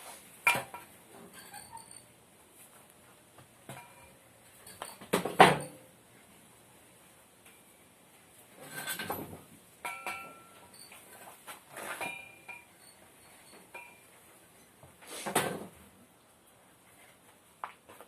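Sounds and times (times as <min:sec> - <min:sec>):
metallic ringing: 0:09.8 - 0:11.1.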